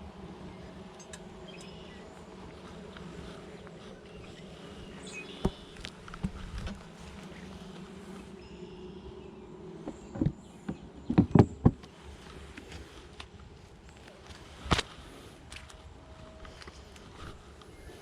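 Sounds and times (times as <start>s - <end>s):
honeybees buzzing: 0.0s - 18.0s.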